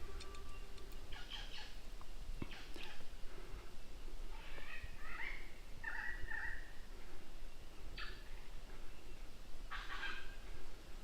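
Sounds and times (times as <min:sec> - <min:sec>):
faint bird calls: 0:00.0 - 0:01.8, 0:02.4 - 0:03.5, 0:04.3 - 0:07.2, 0:07.8 - 0:10.6.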